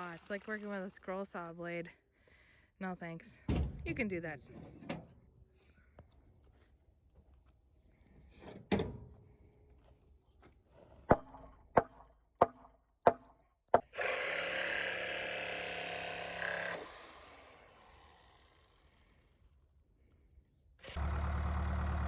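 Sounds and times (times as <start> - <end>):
power saw running: 13.9 - 19.2, 20.8 - 22.0.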